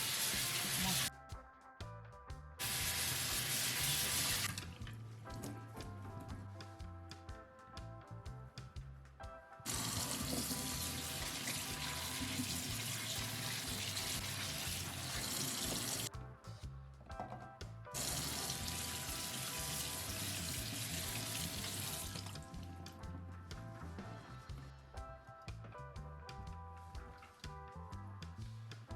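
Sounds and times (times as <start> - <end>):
tap water running into sink: 0.0 - 1.1, 2.6 - 4.6, 9.7 - 16.1, 18.0 - 22.6
background music: 0.0 - 28.9.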